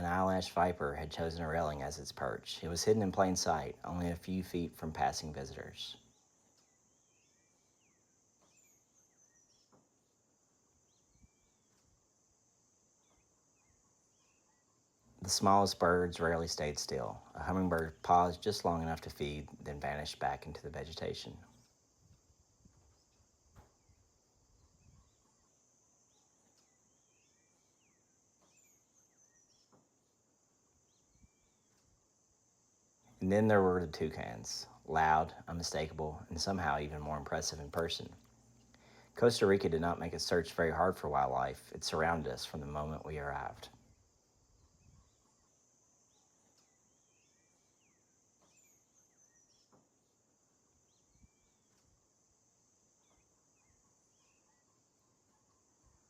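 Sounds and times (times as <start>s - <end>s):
bird chirps: 0.0s - 12.1s, 12.9s - 21.8s, 22.7s - 32.0s, 33.1s - 52.1s, 52.9s - 56.0s
steady high hiss: 0.0s - 56.0s
high-pitched hiss: 13.1s - 29.6s.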